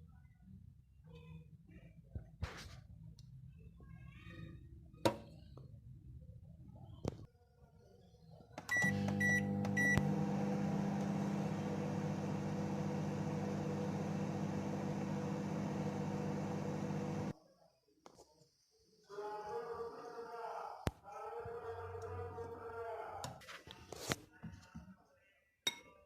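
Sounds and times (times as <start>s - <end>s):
microwave keypad beeping: 8.6s - 15.2s
microwave oven humming: 8.7s - 17.3s.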